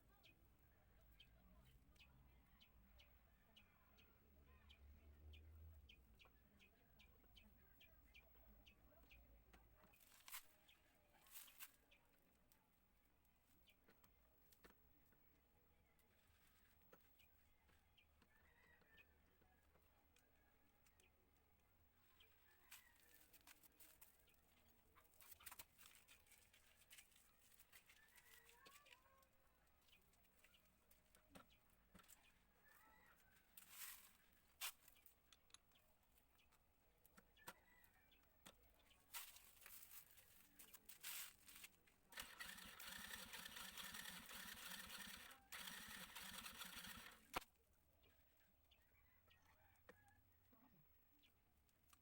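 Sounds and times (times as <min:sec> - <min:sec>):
faint bird chirps: 0:15.7 - 0:21.1, 0:37.3 - 0:39.0, 0:48.0 - 0:51.4.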